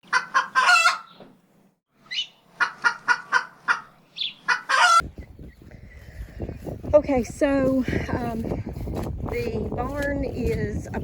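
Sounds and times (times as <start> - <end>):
chicken cackling: 0.0 - 1.2, 2.0 - 5.6.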